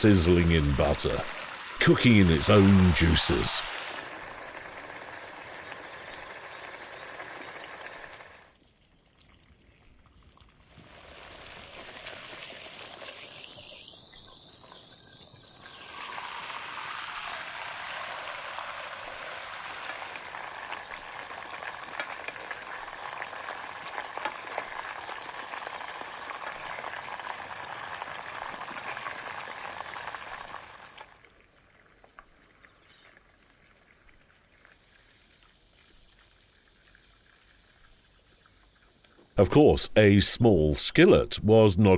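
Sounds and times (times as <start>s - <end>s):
steak sizzling in a skillet: 15.6s - 30.5s.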